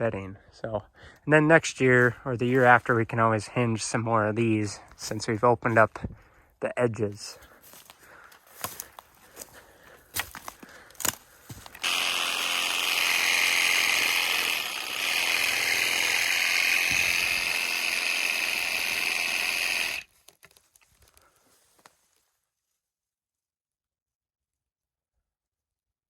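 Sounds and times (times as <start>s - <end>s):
chainsaw cutting into tree trunk: 11.1s - 20.1s.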